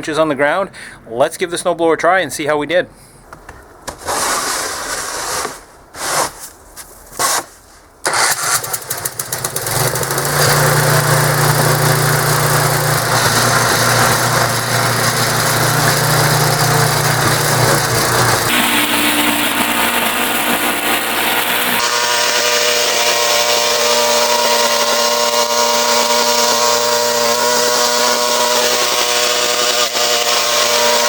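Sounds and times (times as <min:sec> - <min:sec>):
engine cranking: 0:08.0 - 0:21.9
snow thrower engine running: 0:08.1 - 0:31.0.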